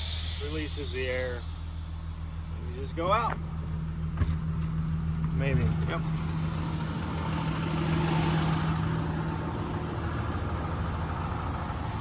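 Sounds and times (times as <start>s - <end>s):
diesel engine idling: 0.0s - 9.6s.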